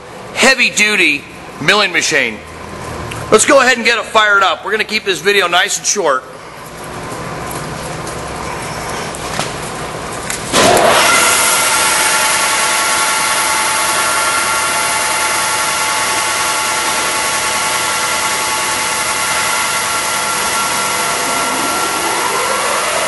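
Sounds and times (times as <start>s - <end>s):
milling machine gear whine: 6.6s - 23.0s
rising whine: 10.5s - 23.0s.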